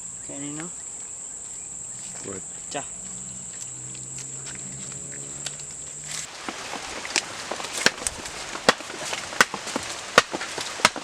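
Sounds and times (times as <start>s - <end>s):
insect buzzing: 0.0s - 11.0s
rain hiss: 5.0s - 11.0s
sharp knocks: 6.5s - 11.0s.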